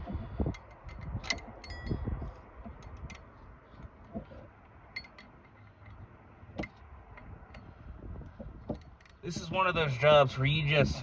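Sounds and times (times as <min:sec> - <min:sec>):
hand tools clinking on metal: 0:00.6 - 0:02.0, 0:04.9 - 0:06.0
short metallic ring: 0:01.3 - 0:02.1.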